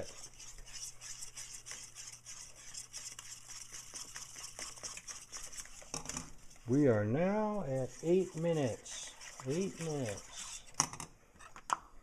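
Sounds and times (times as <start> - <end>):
spoon scraping a saucepan: 7.4 - 10.8.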